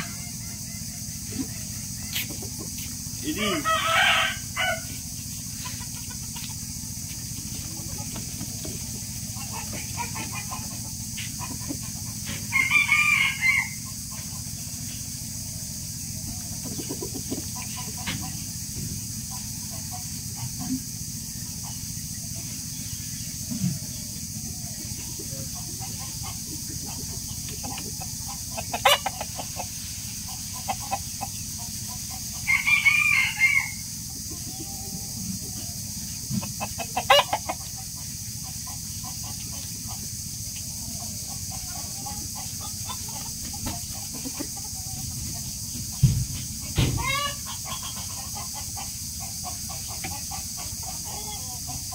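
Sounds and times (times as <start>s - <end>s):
rooster crowing: 0.0s - 2.2s, 3.2s - 5.1s, 12.1s - 14.2s, 32.1s - 35.9s
background hum: 0.0s - 51.9s
chickens clucking: 0.0s - 51.9s.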